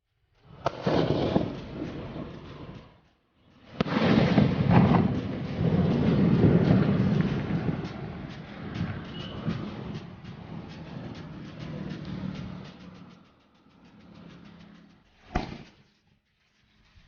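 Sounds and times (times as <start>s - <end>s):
firework bangs: 0.5s - 3.0s, 3.6s - 12.3s
crackling firework pops: 0.5s - 15.9s.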